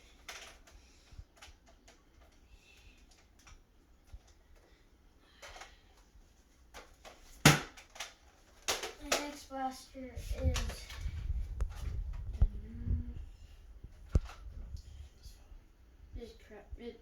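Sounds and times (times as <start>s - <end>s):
plastic toy blaster clicks and rattles: 0.0s - 4.7s, 6.7s - 9.4s.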